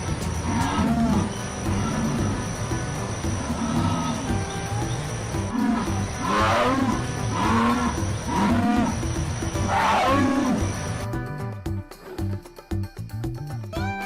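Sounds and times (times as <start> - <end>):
background music: 0.0 - 14.0
jaguar grunting calls: 0.4 - 2.5, 3.5 - 10.8.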